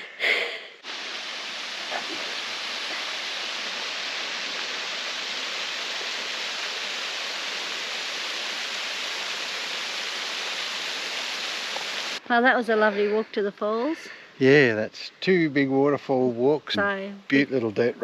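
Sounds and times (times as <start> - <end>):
waterfall pouring: 0.8 - 12.2.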